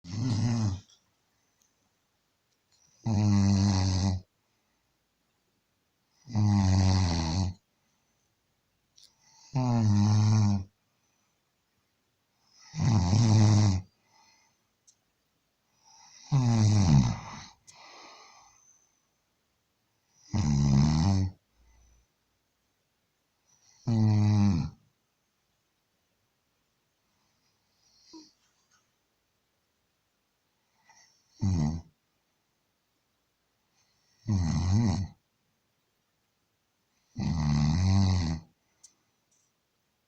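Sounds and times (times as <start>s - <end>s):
man snoring: 0.1s - 0.9s, 3.0s - 4.2s, 6.2s - 7.6s, 9.4s - 10.7s, 12.6s - 13.9s, 15.9s - 18.4s, 20.2s - 21.4s, 23.8s - 24.8s, 31.3s - 31.9s, 34.2s - 35.2s, 37.2s - 38.5s
soft breath out: 17.2s - 19.2s.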